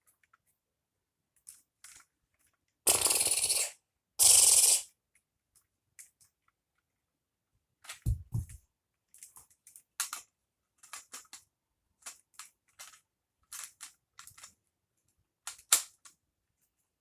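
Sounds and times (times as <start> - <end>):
plastic toy rifle clicks and clacks: 9.1 - 14.6, 15.4 - 16.2.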